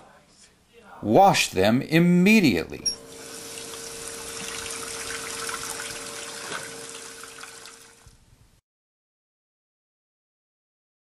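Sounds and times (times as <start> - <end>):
tap water running into sink: 3.0 - 8.2.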